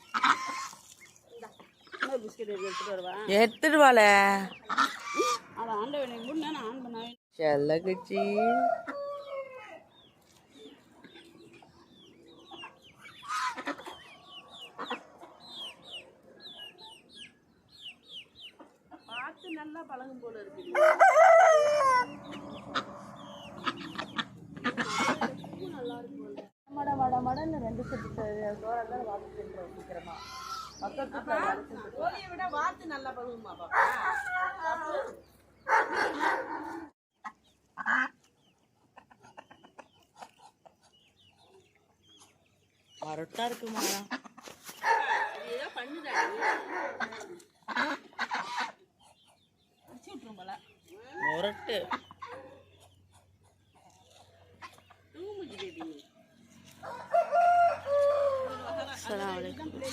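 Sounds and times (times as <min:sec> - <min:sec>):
chick squawk: 0:00.0 - 0:01.0, 0:04.6 - 0:05.6, 0:12.6 - 0:15.4, 0:20.7 - 0:25.6, 0:30.1 - 0:30.8, 0:43.8 - 0:49.4
chicks peeping: 0:08.9 - 0:19.6, 0:20.5 - 0:26.4, 0:38.2 - 0:58.4.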